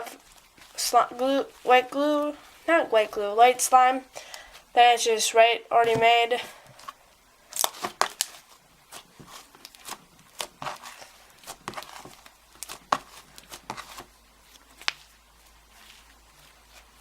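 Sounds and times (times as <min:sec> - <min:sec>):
slime popping and crackling: 0:07.5 - 0:17.0.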